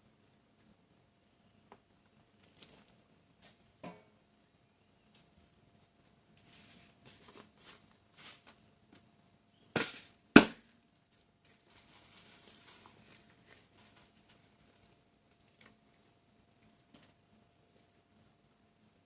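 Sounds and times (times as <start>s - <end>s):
hands rubbing on rubber: 6.4s - 8.6s.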